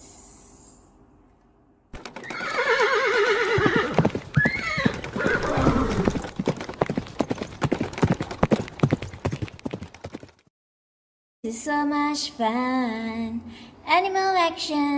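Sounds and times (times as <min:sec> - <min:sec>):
galloping hoofbeats: 0:02.0 - 0:10.5
horse whinnying: 0:02.1 - 0:06.3.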